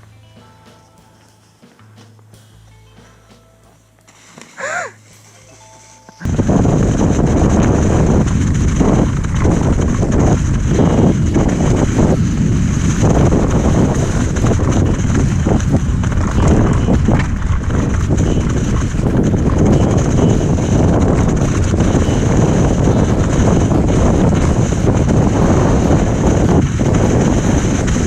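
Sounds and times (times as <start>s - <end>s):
wind buffeting microphone: 6.2s - 28.0s.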